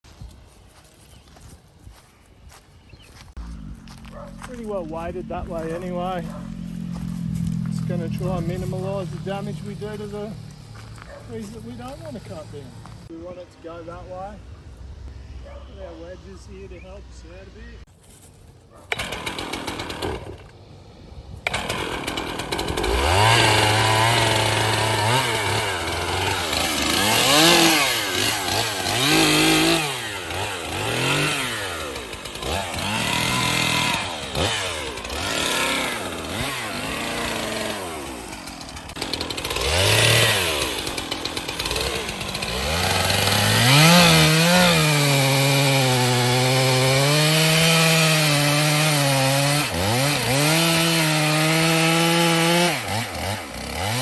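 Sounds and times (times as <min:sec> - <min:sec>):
chainsaw cutting wood: 0:03.3 - 0:13.1, 0:18.9 - 0:20.7, 0:21.4 - 0:54.0.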